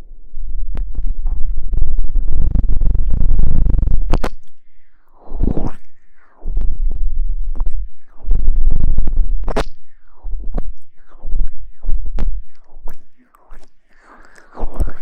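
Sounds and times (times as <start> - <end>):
heavy low rumble: 0.0 - 4.2
rubbing and scratching on microphone: 0.7 - 4.6, 5.2 - 15.0.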